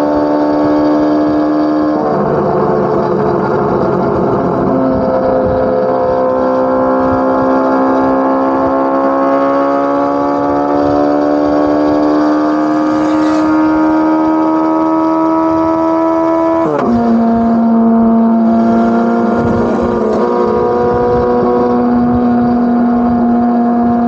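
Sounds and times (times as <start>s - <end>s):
car engine exhaust under load: 10.4s - 24.0s.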